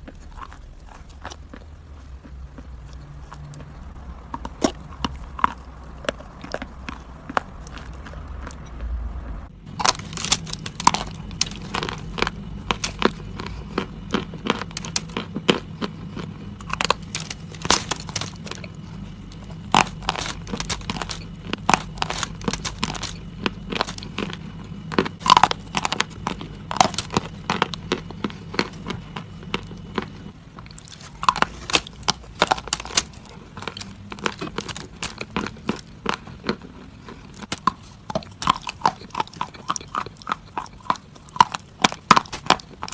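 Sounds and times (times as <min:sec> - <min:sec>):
brittle crunching and crackling: 0:09.6 - 0:42.9.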